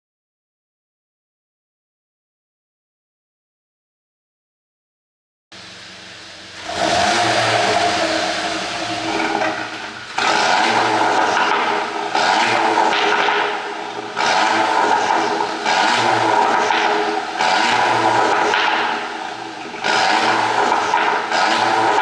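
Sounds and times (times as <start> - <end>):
car engine revving with crackles: 5.6 - 22.0.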